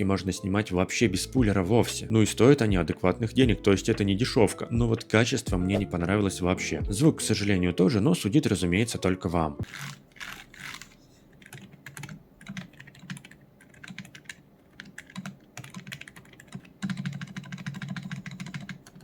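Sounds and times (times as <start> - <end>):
typing on mechanical keyboard: 10.2 - 19.0.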